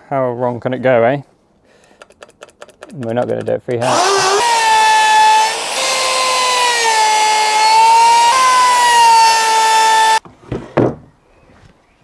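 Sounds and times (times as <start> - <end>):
electric router whining: 3.8 - 10.2.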